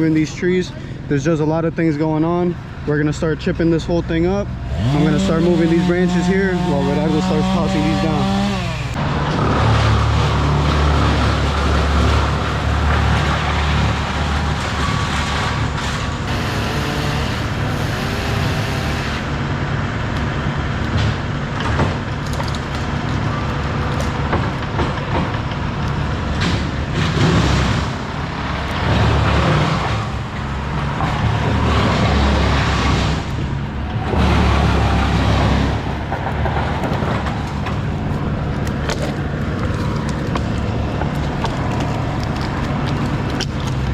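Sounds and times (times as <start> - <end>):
diesel machinery engines droning: 0.0 - 43.9
branches cracking and knocking: 5.6 - 9.0, 21.6 - 28.0, 34.7 - 43.9.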